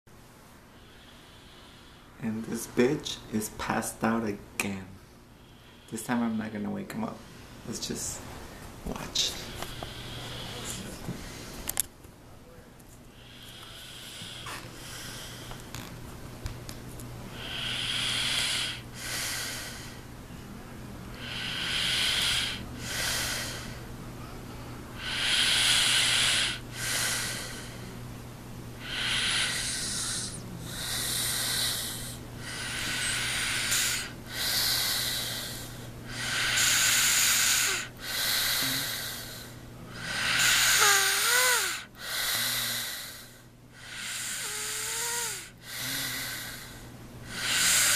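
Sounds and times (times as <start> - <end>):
wavering pitched snort: 9.5 - 10.9, 28.8 - 39.3, 40.0 - 43.2
man snoring: 9.5 - 11.0, 13.2 - 15.9, 17.4 - 20.0, 21.2 - 23.8, 25.0 - 27.7, 28.8 - 47.9.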